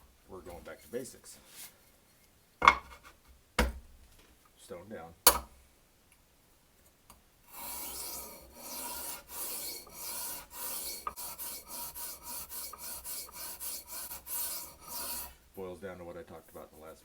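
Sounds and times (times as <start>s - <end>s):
knife scraping sharpening stone: 7.6s - 15.4s.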